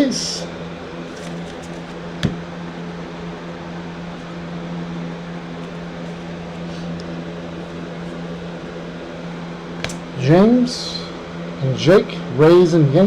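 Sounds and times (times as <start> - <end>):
trading cards being handled: 1.0 - 2.6, 5.3 - 8.3, 9.8 - 10.2.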